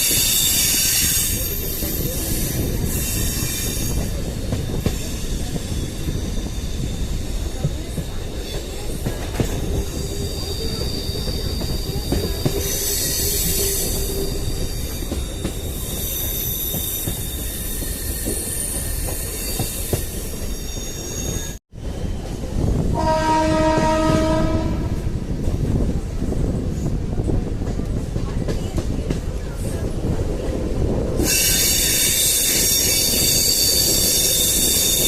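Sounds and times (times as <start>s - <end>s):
train wheels squealing: 0.0s - 22.6s, 31.2s - 35.0s
track rumble and clatter: 22.2s - 35.0s
train horn: 22.9s - 25.1s.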